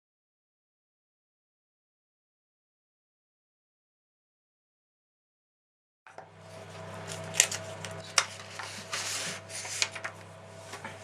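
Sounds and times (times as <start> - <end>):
low electrical hum: 6.1 - 11.0
rubbing and rustling: 6.5 - 11.0.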